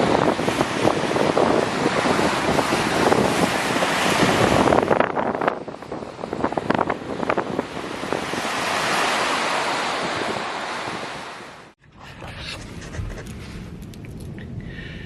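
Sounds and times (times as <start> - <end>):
waves surging and crashing: 0.0 - 11.8
wind buffeting microphone: 0.0 - 15.0.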